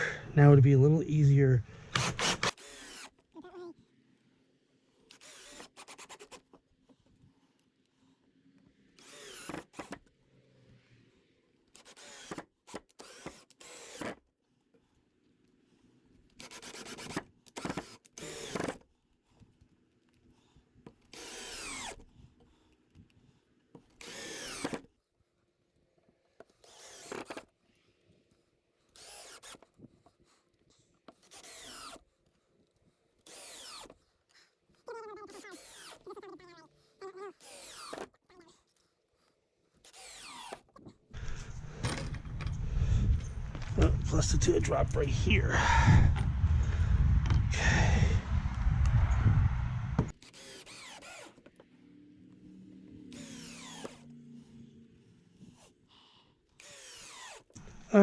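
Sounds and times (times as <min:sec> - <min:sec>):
cordless drill driving screws: 0:01.8 - 0:03.2, 0:05.1 - 0:05.9, 0:09.0 - 0:09.9, 0:11.7 - 0:14.2, 0:21.1 - 0:22.0, 0:24.0 - 0:24.9, 0:26.5 - 0:27.5, 0:28.9 - 0:29.7, 0:33.3 - 0:34.0, 0:41.2 - 0:43.8, 0:50.3 - 0:51.5, 0:53.1 - 0:54.1, 0:56.6 - 0:57.6.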